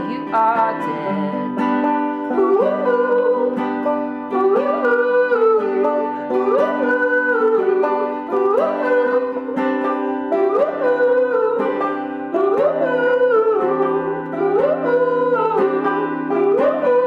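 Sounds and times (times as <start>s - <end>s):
banjo picking: 0.0s - 17.0s
folk band playing: 0.0s - 17.0s
sliding melody line: 0.0s - 17.0s.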